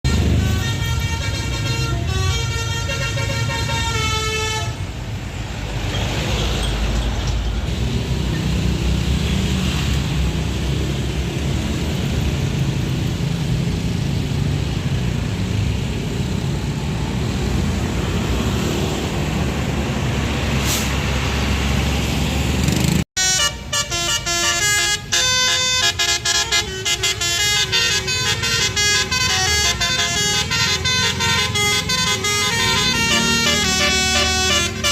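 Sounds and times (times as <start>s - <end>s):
multi-tone bus horn: 0.0s - 5.2s, 23.2s - 34.9s
low engine and road rumble: 0.0s - 34.9s.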